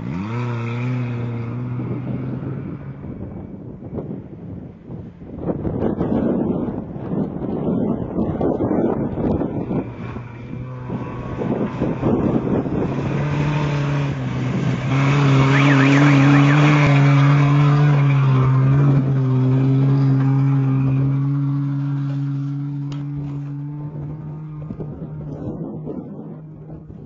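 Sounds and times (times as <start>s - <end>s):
race truck engine passing: 10.4s - 22.8s.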